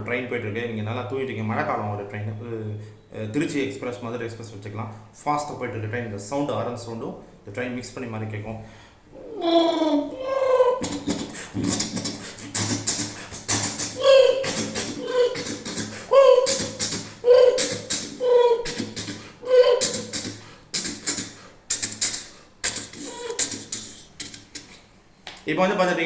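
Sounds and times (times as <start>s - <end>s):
vocal horn-like hooting: 9.2s - 24.7s.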